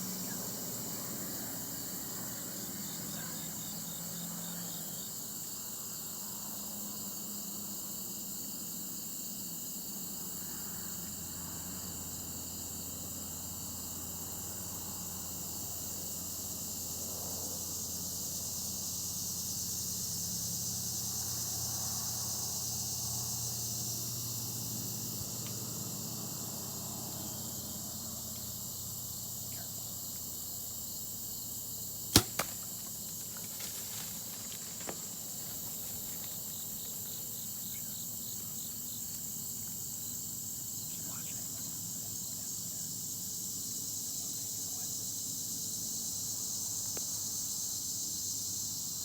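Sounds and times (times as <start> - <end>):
crickets and insects chirring: 0.0 - 49.0
bowstring release crack: 32.1 - 33.8.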